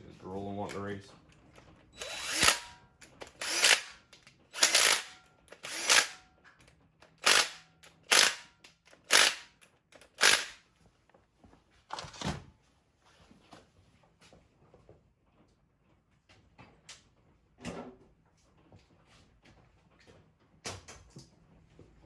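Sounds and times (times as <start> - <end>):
power tool driving bolts: 2.0 - 6.2, 7.0 - 10.6.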